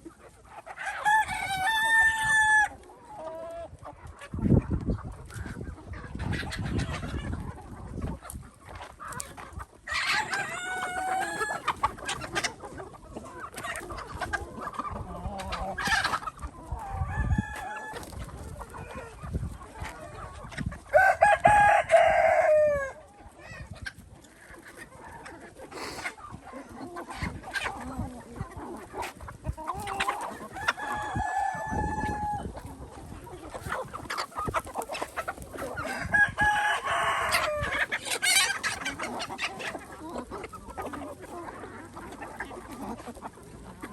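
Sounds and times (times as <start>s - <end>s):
chickens clucking: 0.0s - 43.9s
rooster crowing: 21.0s - 22.9s, 35.9s - 37.7s.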